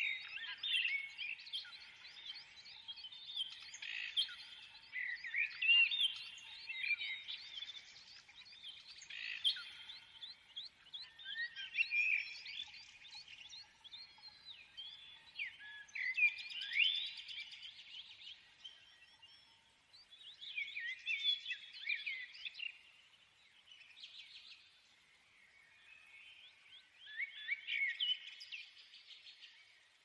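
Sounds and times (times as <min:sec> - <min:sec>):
small birds chirping: 0:00.0 - 0:30.0.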